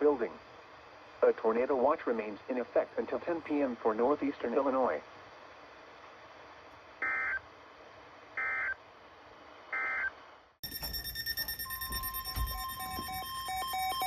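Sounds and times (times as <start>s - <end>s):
rapid beeps: 9.8s - 14.0s
short data tone bursts: 9.8s - 14.0s
steady electronic tones: 10.6s - 14.0s.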